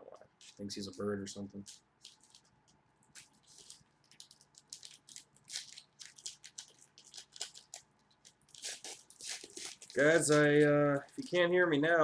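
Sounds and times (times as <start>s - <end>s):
trading cards rustling: 0.4s - 11.6s.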